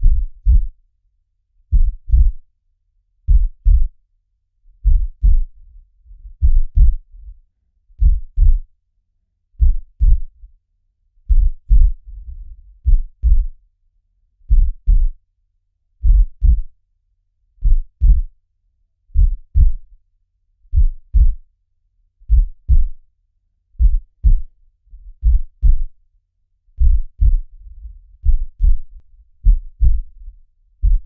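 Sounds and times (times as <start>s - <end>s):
heartbeat thumps: 0.0s - 0.7s, 1.7s - 2.4s, 3.3s - 4.0s, 4.8s - 5.5s, 6.2s - 7.1s, 8.0s - 8.7s, 9.6s - 10.3s, 11.3s - 13.5s, 14.5s - 15.2s, 16.0s - 16.7s, 17.6s - 18.3s, 19.2s - 19.9s, 20.7s - 21.4s, 22.3s - 23.0s, 23.8s - 26.0s, 26.8s - 31.0s.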